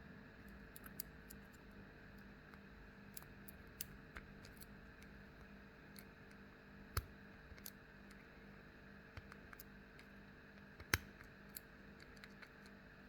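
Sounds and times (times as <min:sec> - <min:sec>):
faint steady hum: 0:00.0 - 0:13.0
small metallic lock picking clicks: 0:00.7 - 0:01.6, 0:03.1 - 0:04.7.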